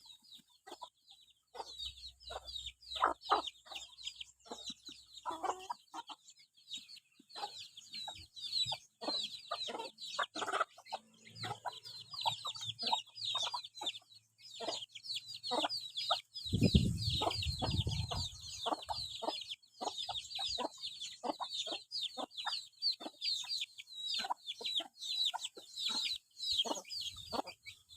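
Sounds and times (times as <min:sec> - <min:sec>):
chickens clucking: 0:00.0 - 0:27.9
rapid high chirping: 0:14.6 - 0:22.3.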